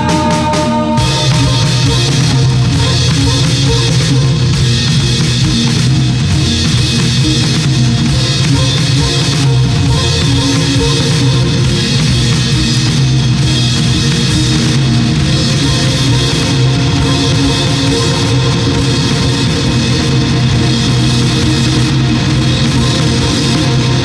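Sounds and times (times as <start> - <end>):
loud rock band music: 0.0 - 24.0.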